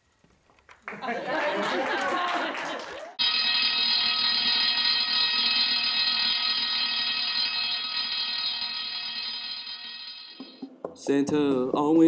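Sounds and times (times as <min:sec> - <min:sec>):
steady electronic buzzer tone: 0:03.2 - 0:10.7.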